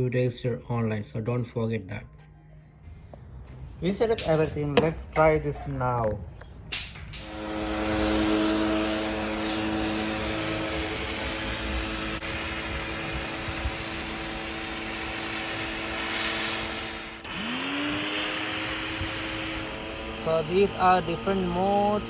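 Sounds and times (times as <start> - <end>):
pressure washer motor hum: 2.9 - 22.0
water jet hissing: 7.2 - 22.0.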